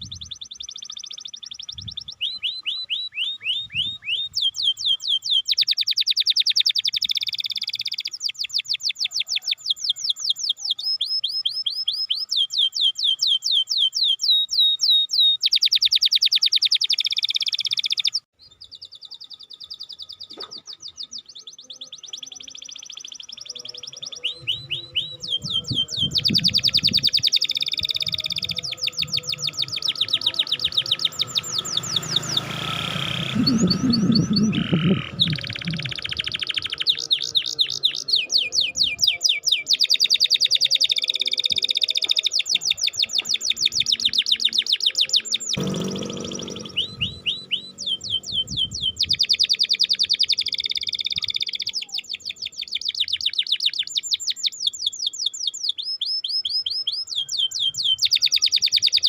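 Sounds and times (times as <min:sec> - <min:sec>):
canary singing trills: 0:00.0 - 0:59.0
low rumble: 0:28.2 - 0:35.9, 0:45.6 - 0:49.0.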